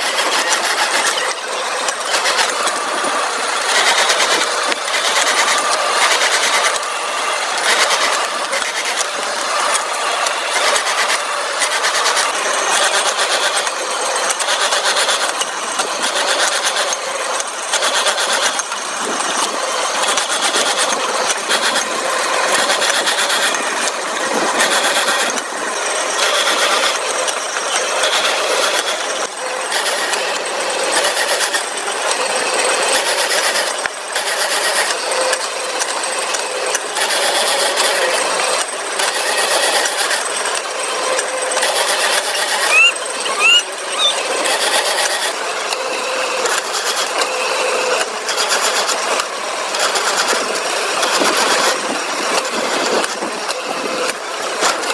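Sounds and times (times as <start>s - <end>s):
factory machinery running: 0.0s - 54.9s
short rising squeaks: 41.6s - 45.3s.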